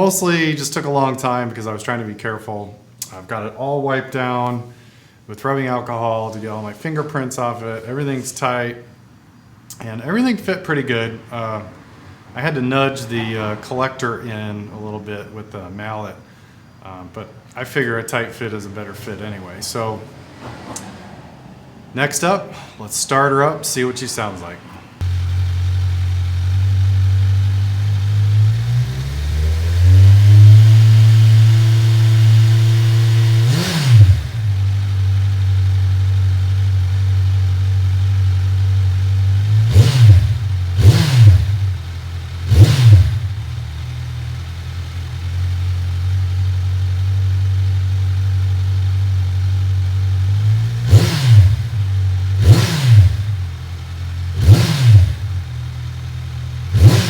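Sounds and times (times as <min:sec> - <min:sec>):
sharp throttle blips: 0:24.4 - 0:57.0
motorcycle engine idling: 0:24.9 - 0:57.0.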